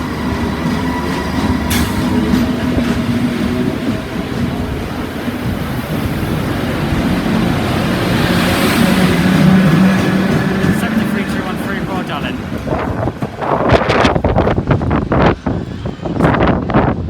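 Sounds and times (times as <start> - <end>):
locomotive low drone: 0.0 - 17.0.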